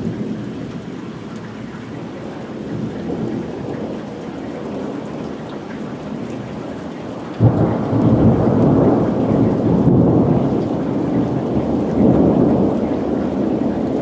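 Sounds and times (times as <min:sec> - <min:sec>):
rain falling: 0:00.0 - 0:14.0
thunder clap and rumble: 0:07.2 - 0:14.0.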